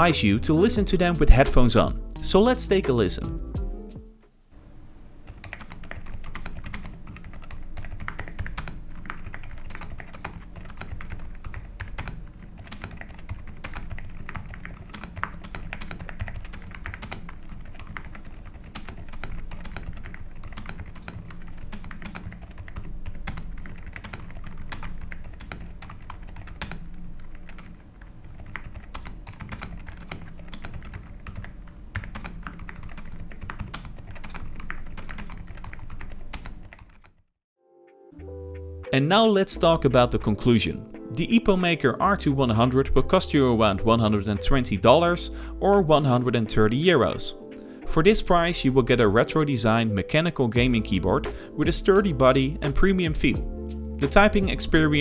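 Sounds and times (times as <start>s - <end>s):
soft muffled keyboard typing: 5.2s - 37.2s, 46.6s - 48.4s.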